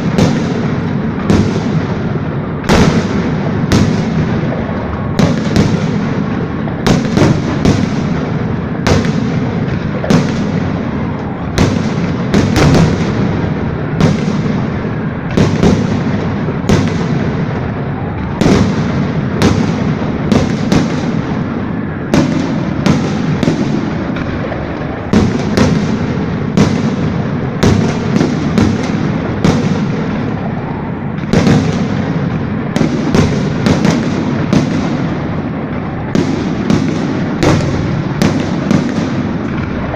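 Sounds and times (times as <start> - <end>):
firework shells bursting: 0.0 - 39.9.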